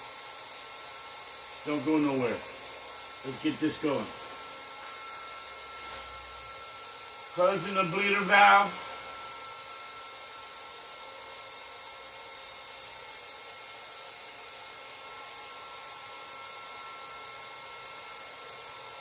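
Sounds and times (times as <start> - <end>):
air compressor whirring hiss: 0.0 - 19.0
thin high whines: 1.6 - 10.0.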